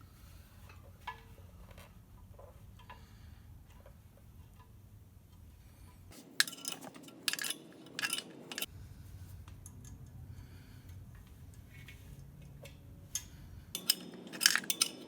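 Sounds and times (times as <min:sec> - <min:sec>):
metallic clinks of fittings and tool: 0:06.2 - 0:08.7, 0:11.5 - 0:15.0.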